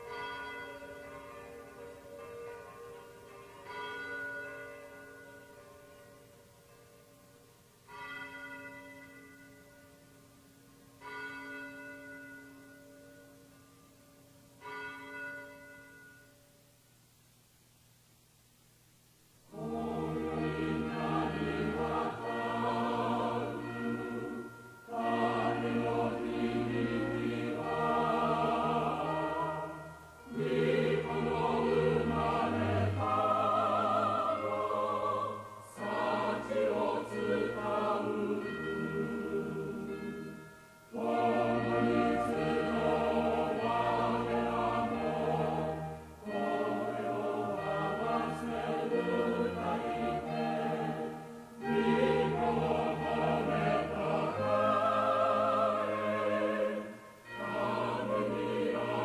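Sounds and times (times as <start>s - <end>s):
choir singing a hymn: 0.0s - 4.2s, 19.4s - 59.0s.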